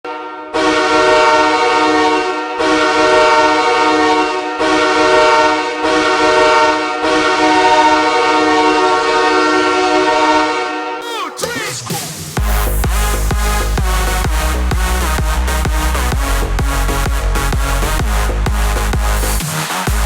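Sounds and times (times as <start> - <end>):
goal horn blasts: 0.1 - 11.5.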